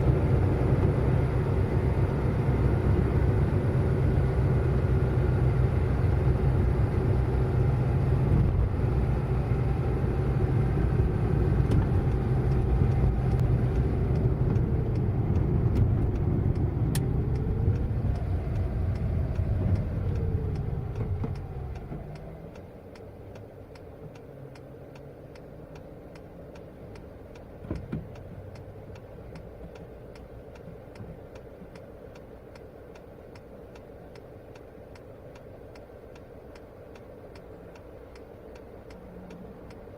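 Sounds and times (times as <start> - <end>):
car engine and road rumble: 0.0 - 39.9
faint regular ticking: 10.7 - 39.9.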